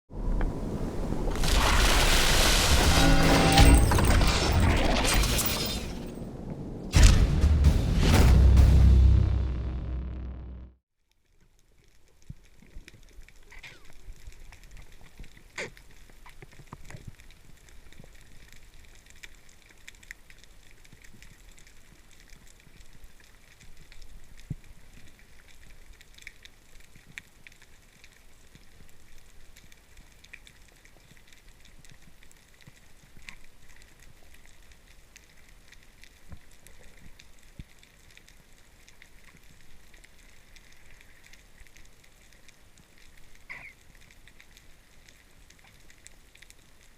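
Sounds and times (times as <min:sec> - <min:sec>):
underwater crackle: 0:11.0 - 0:46.9.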